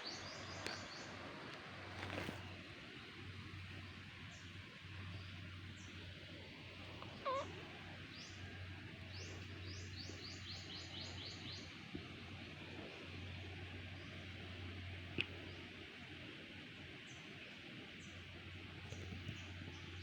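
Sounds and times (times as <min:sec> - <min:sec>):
small birds chirping: 0:00.0 - 0:01.2, 0:06.8 - 0:11.8, 0:16.8 - 0:20.0.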